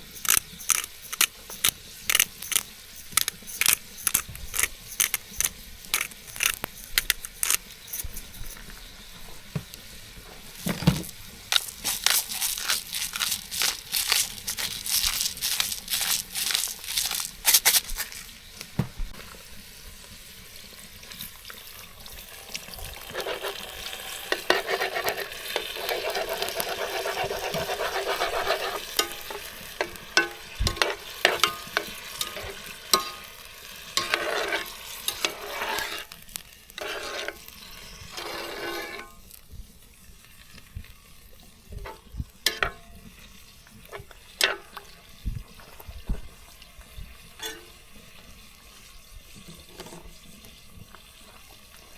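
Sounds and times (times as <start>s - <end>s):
utensil scraping a pan: 0.0s - 9.5s, 10.2s - 18.4s, 22.9s - 39.4s, 43.7s - 46.4s, 47.4s - 47.9s
food sizzling in a pan: 0.0s - 51.9s.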